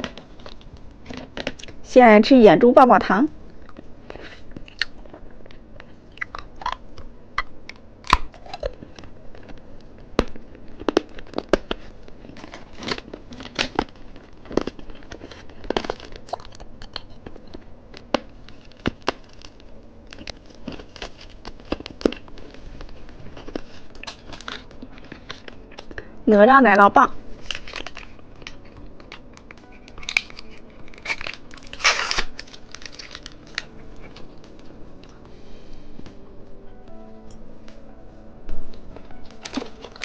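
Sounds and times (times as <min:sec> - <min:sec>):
candy crunching and chewing: 0:03.6 - 0:26.1, 0:27.2 - 0:35.2, 0:39.1 - 0:40.0
plastic wrapper crinkling: 0:03.6 - 0:26.1, 0:27.1 - 0:35.2, 0:38.8 - 0:40.0.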